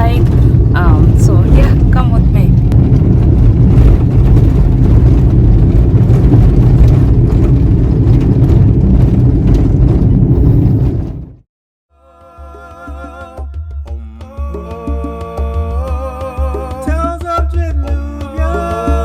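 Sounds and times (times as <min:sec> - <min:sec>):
car road and engine rumble: 0:00.0 - 0:11.5.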